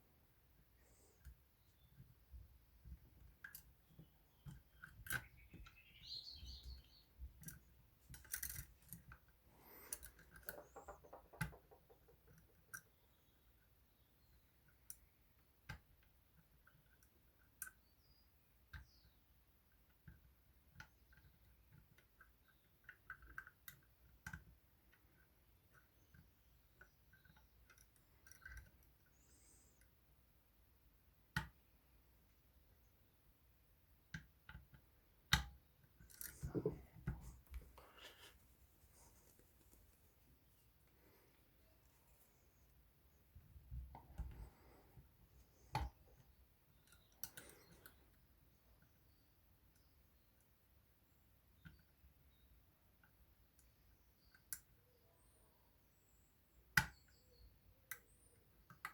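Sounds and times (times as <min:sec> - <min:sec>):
lock picks clicking and scraping: 0:07.2 - 0:13.0, 0:35.8 - 0:37.8.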